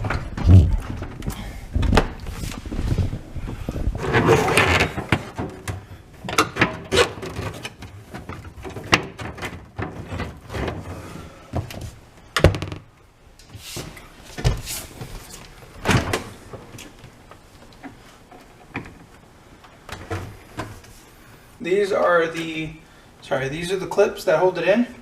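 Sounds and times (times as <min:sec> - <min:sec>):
dishwasher knocking and scraping: 0:04.0 - 0:10.8.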